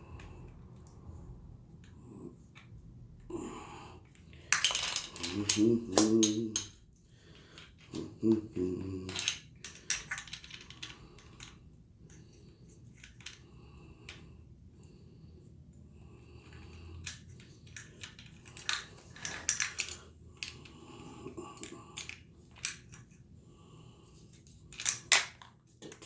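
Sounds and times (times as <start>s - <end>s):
low muttering voice: 5.2s - 6.8s, 7.9s - 9.2s.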